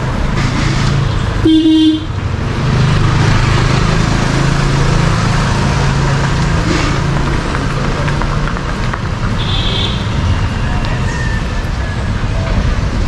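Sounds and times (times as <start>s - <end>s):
busy street traffic: 0.0s - 13.0s
vehicle horn honk: 1.4s - 2.2s, 9.4s - 10.2s.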